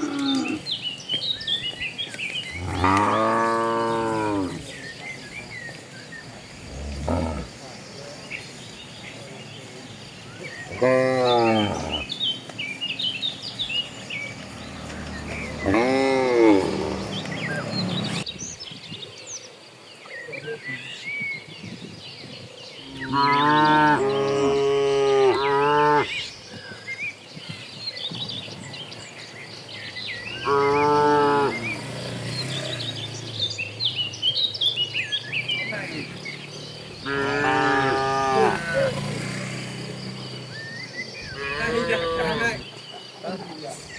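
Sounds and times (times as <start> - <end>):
cattle mooing: 0.0 - 0.7, 2.6 - 4.7, 6.7 - 7.6, 10.7 - 12.1, 15.6 - 17.1, 22.9 - 26.2, 30.4 - 31.8, 37.0 - 39.2, 41.3 - 42.6
small birds chirping: 0.0 - 43.9.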